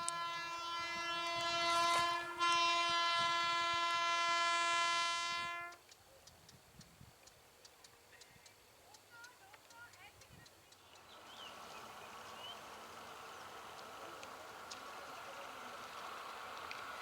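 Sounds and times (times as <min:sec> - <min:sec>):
train horn blast: 0:00.0 - 0:05.8.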